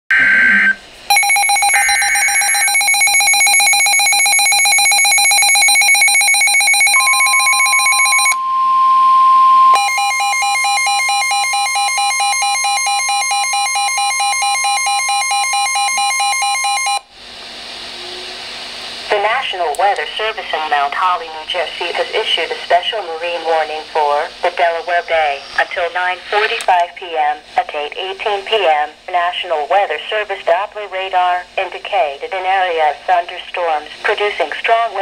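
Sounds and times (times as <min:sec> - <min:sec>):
digital alert buzz: 0:00.1 - 0:03.8, 0:04.8 - 0:08.4
electronic alarm beeping: 0:00.1 - 0:17.0
steady high warning tone: 0:00.1 - 0:17.1.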